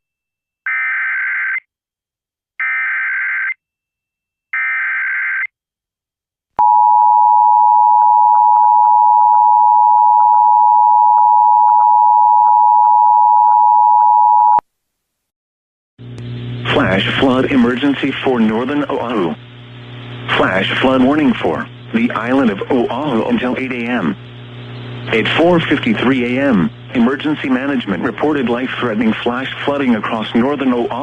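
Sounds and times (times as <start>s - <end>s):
buzzy digital data bursts: 16.4s - 31.0s.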